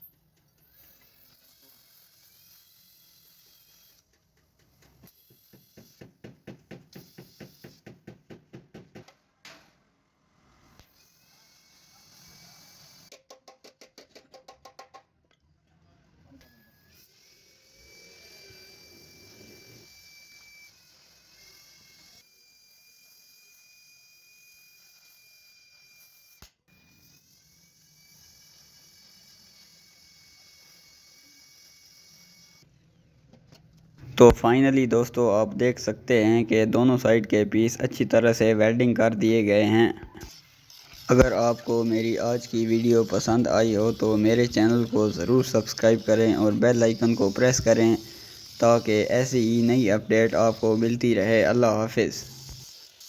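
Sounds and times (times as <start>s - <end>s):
short scraping hiss: 40.2s - 51.0s
steady thin high whine: 41.1s - 52.6s.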